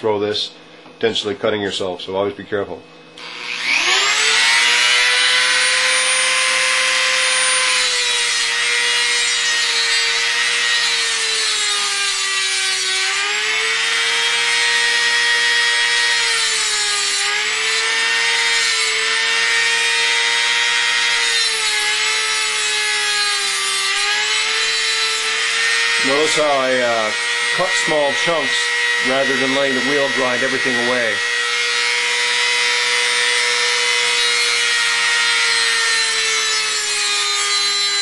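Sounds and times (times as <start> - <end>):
rotary tool motor whine: 3.2 - 38.0
abrasive disc grinding steel: 25.3 - 33.0.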